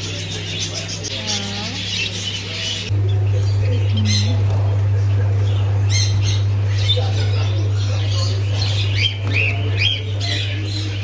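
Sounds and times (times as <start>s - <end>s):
birds chirping and squawking: 0.0s - 11.0s
low hum: 2.8s - 11.0s.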